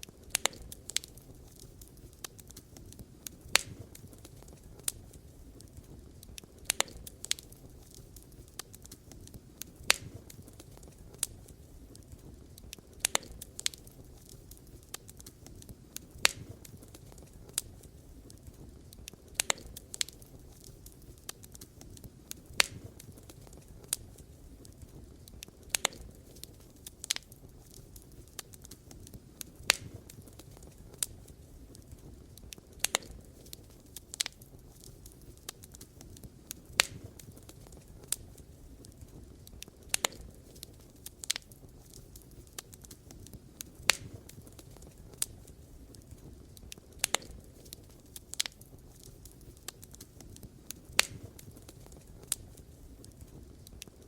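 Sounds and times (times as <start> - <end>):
campfire pops: 0.0 - 54.0
fire rumbling: 0.0 - 54.0.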